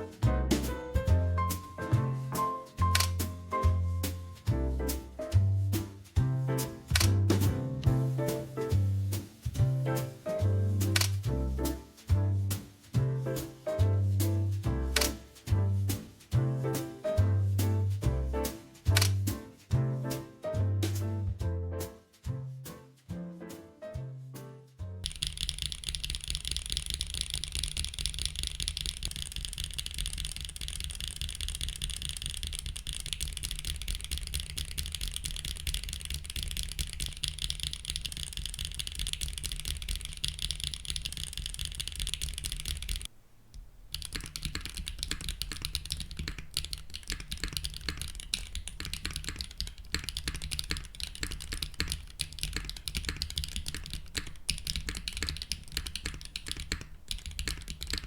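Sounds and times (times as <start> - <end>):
mechanical keyboard typing: 25.0 - 43.1, 43.9 - 58.0.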